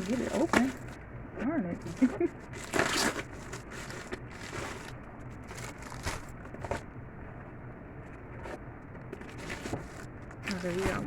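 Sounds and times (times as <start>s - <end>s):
packages rustling and crinkling: 0.0s - 1.0s, 1.8s - 6.9s, 8.2s - 11.0s.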